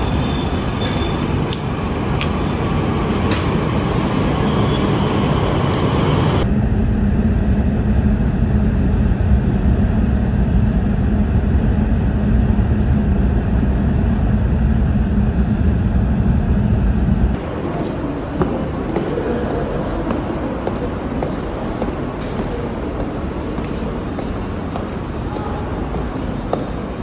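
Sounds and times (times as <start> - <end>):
vehicle road noise rumbling: 0.0 - 6.5, 17.2 - 27.0.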